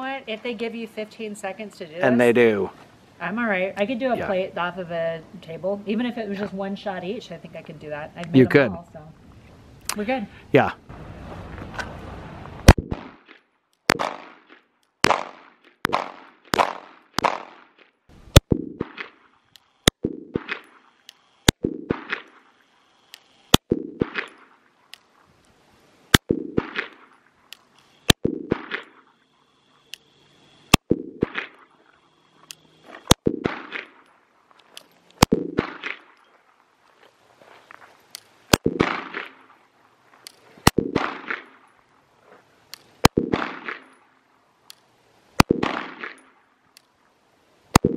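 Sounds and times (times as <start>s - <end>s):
pistol shots echoing: 13.9s - 17.8s, 26.1s - 27.1s, 28.2s - 29.1s, 33.0s - 34.1s, 35.2s - 36.2s, 38.5s - 39.6s, 40.6s - 41.7s, 43.0s - 44.1s, 45.4s - 46.4s.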